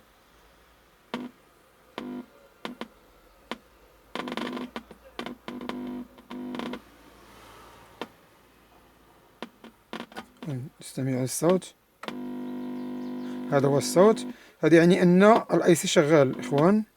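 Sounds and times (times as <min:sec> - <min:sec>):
buzzing hum from speakers: 0:01.1 - 0:01.4, 0:02.0 - 0:02.9, 0:03.5 - 0:07.0, 0:12.0 - 0:15.4, 0:16.0 - 0:16.8.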